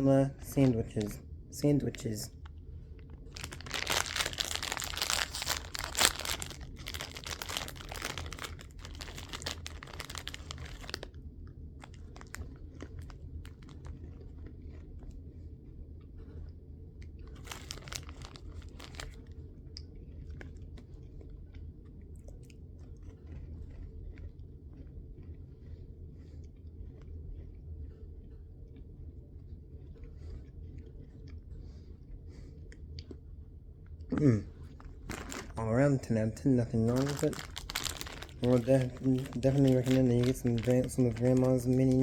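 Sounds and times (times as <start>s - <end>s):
cookies being bitten and chewed: 0.0s - 42.0s
plastic snack bag crinkling: 0.4s - 11.2s, 11.8s - 14.2s, 17.3s - 19.3s, 34.6s - 42.0s.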